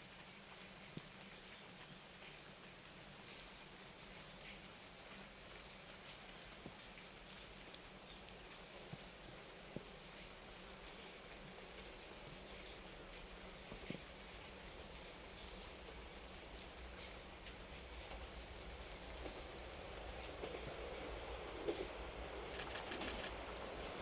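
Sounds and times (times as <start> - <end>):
high insect drone: 8.4 - 21.6.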